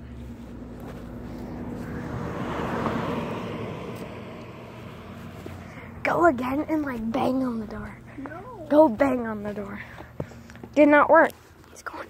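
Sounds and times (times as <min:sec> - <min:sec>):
vehicle passing by: 0:00.0 - 0:08.2.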